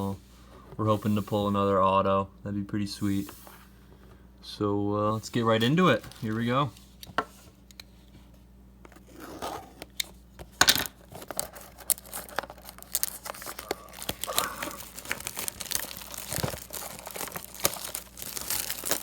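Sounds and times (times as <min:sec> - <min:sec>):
packaging being torn open: 0:11.2 - 0:19.0.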